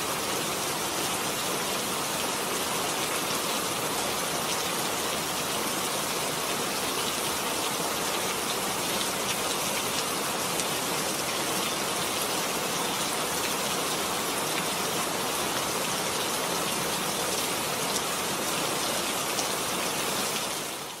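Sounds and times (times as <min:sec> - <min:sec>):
rain falling: 0:00.0 - 0:21.0
raindrops ticking on surface: 0:08.1 - 0:12.1.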